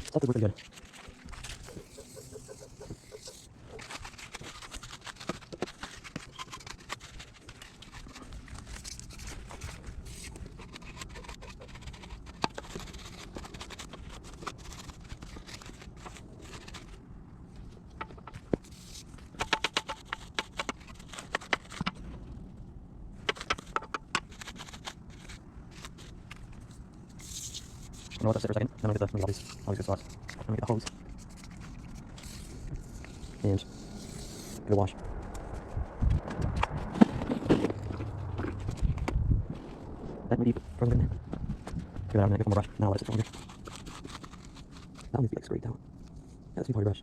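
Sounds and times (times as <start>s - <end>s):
brush scrubbing metal frame: 0.3s - 16.9s.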